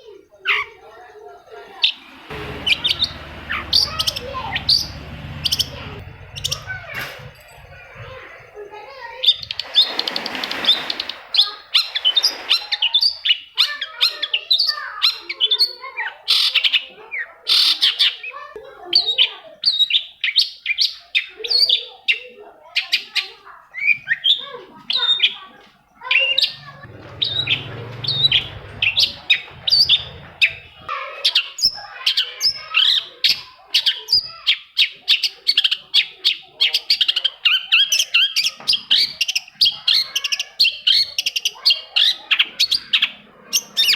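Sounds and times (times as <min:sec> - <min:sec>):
bird singing chattering song: 0:00.2 - 0:12.2.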